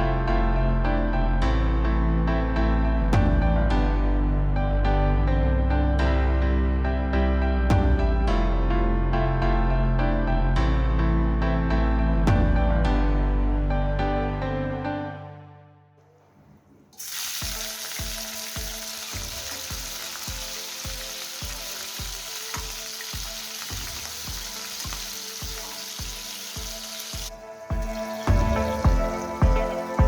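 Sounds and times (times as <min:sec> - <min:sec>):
background music with steady beat: 0:03.0 - 0:05.2, 0:07.7 - 0:08.7, 0:11.8 - 0:14.4, 0:17.4 - 0:30.0
food sizzling in hot oil: 0:17.0 - 0:30.0.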